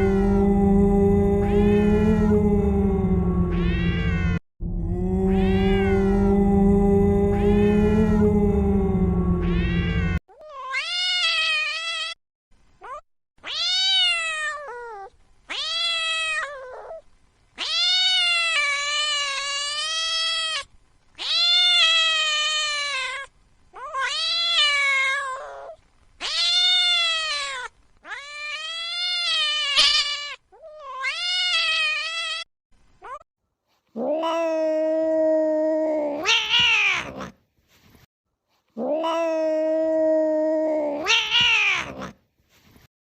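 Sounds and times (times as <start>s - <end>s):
low sound: 0.0s - 10.2s
angry cat yowling: 0.0s - 12.2s, 21.2s - 32.4s, 34.0s - 37.3s, 38.8s - 42.2s.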